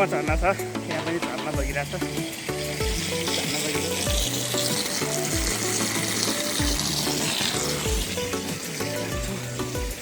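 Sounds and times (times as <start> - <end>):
background music with steady beat: 0.0 - 10.0
small waterfall rushing: 0.0 - 10.0.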